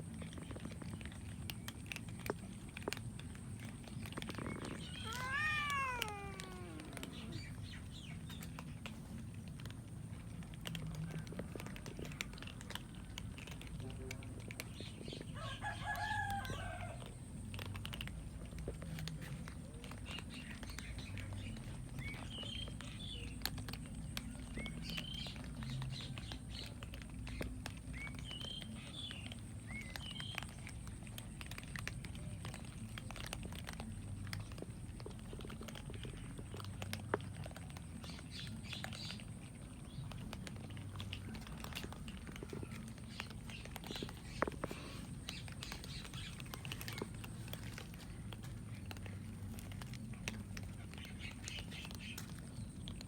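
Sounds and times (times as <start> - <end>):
cats crunching food: 0.0 - 53.0
small birds chirping: 0.0 - 53.0.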